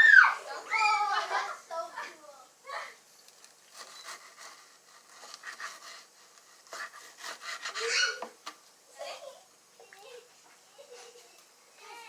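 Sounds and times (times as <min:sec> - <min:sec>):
knife sawing through raw meat: 0:03.8 - 0:08.2.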